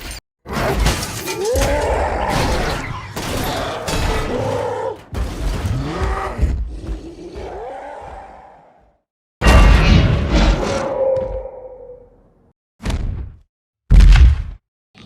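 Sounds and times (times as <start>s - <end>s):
monster roaring: 1.4s - 9.0s, 10.2s - 12.1s.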